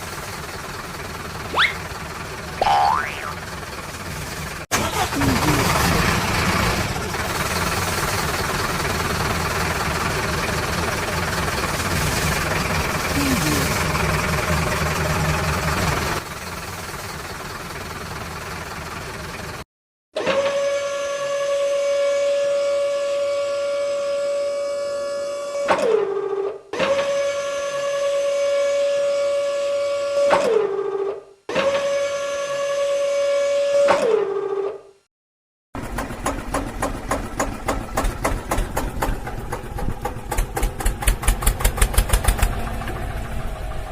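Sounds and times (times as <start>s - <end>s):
engine idling: 0.0s - 19.6s, 35.8s - 43.9s.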